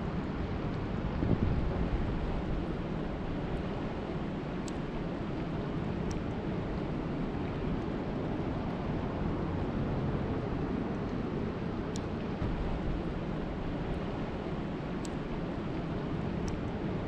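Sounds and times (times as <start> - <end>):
wind rumbling on microphone: 0.0 - 17.0
faint ticks: 3.6 - 7.9, 15.0 - 16.8.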